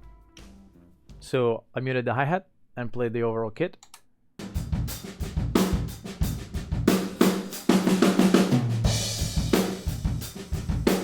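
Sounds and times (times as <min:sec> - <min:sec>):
drum kit groove: 0:00.0 - 0:01.4, 0:04.4 - 0:11.0.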